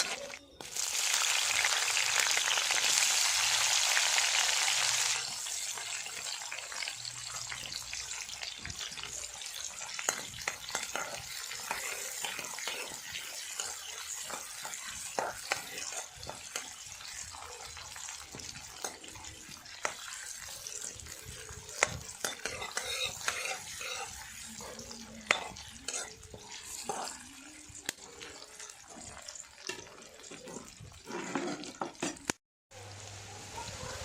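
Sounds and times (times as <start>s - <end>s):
food sizzling in a pan: 0.0s - 34.0s
metal spoon scraping a pan: 7.2s - 32.3s.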